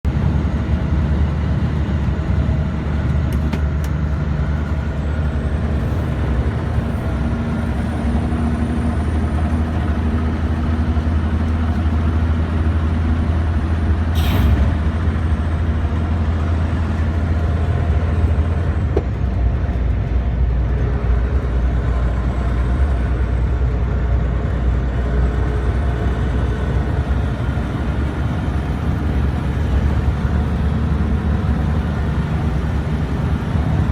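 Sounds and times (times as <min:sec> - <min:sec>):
diesel truck engine pulling: 0:00.1 - 0:33.9
compressed air hiss: 0:14.2 - 0:14.7.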